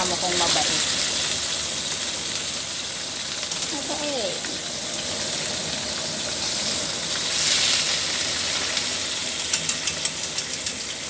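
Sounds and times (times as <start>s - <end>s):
pot sizzling and hissing: 0.0s - 11.0s
sharp clicks and pops: 9.4s - 10.8s.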